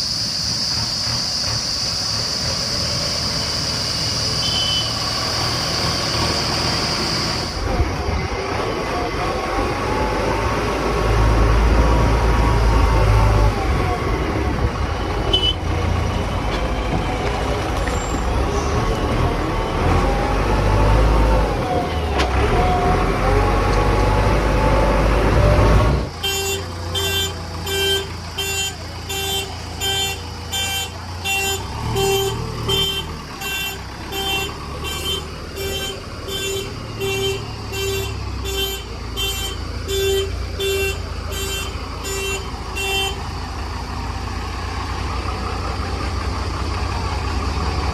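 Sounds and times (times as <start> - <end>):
diesel engine rumbling: 0.0 - 47.9
reversing alarm beeping: 4.3 - 5.1.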